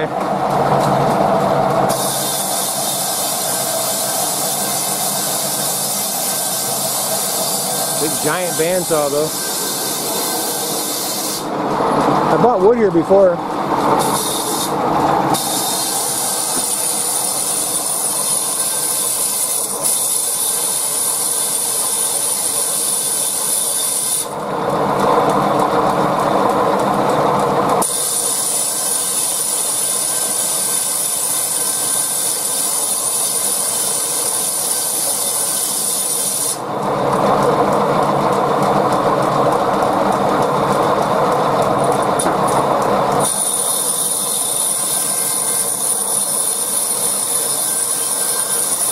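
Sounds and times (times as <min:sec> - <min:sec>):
bandsaw whining: 0:00.0 - 0:25.6, 0:27.6 - 0:36.7, 0:41.5 - 0:48.9
blade cutting through wood: 0:01.9 - 0:11.5, 0:14.0 - 0:24.4, 0:27.8 - 0:36.6, 0:43.2 - 0:48.9.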